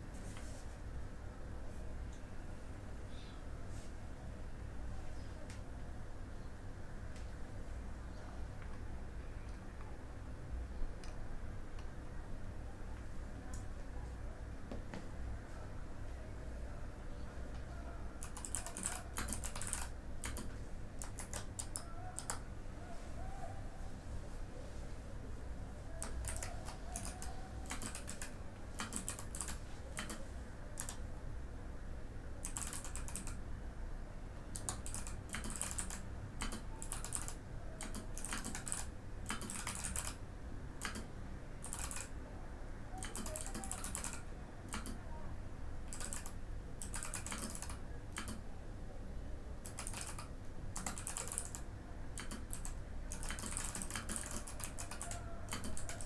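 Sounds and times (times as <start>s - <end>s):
mechanical keyboard clicks: 18.2s - 22.4s, 26.0s - 30.2s, 32.4s - 33.4s, 34.5s - 40.2s, 40.8s - 42.1s, 43.0s - 45.0s, 45.9s - 48.4s, 49.6s - 56.0s.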